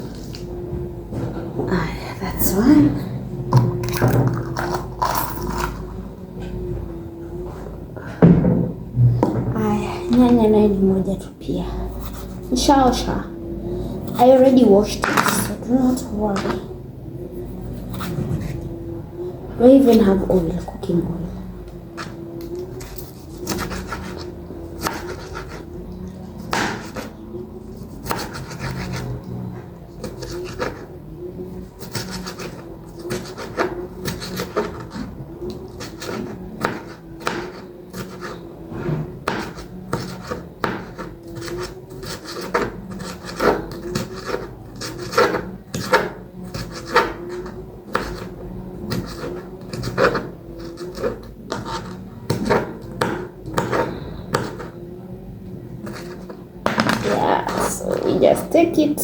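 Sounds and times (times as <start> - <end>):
knife chopping on wooden board: 24.8 - 25.6, 26.4 - 27.1, 27.8 - 29.2, 35.8 - 38.3, 39.2 - 48.3, 48.9 - 54.7.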